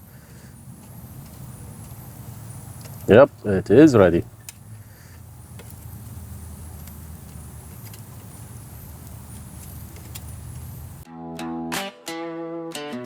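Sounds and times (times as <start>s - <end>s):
faint ticks: 0.0s - 3.5s, 4.2s - 11.0s
acoustic guitar music: 10.3s - 13.0s.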